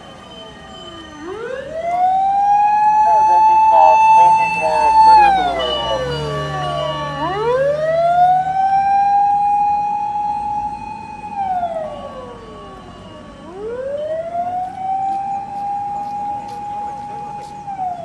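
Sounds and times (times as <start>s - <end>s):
fire engine siren wailing: 0.0s - 18.0s.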